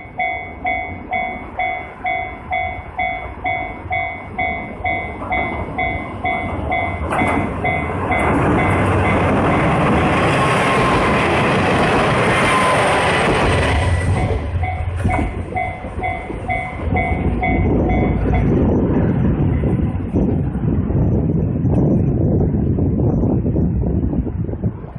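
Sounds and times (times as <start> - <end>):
level crossing alarm dinging: 0.0 - 11.2, 12.3 - 18.5
train passing with wheel clatter: 0.0 - 24.9.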